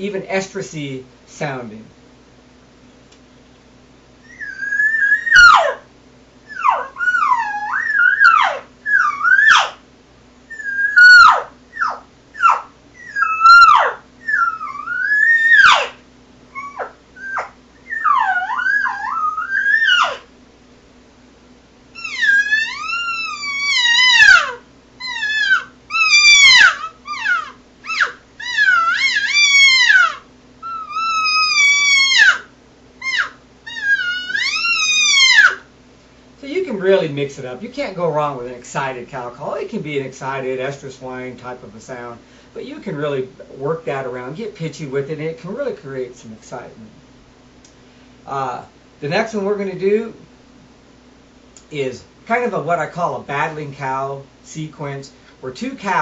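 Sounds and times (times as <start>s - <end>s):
high wavering elk call mews: 4.2s - 5.9s, 6.5s - 9.8s, 10.5s - 20.4s, 21.9s - 35.7s.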